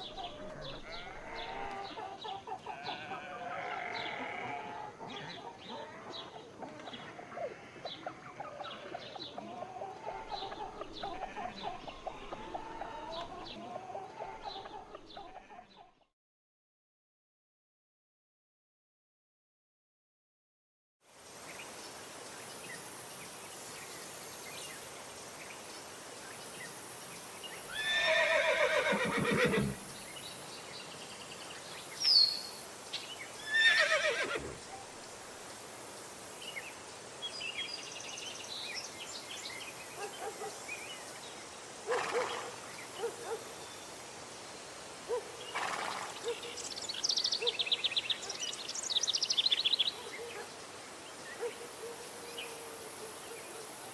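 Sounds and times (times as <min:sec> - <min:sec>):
high insect hiss: 0:21.1 - 0:49.9, 0:50.5 - 0:53.9.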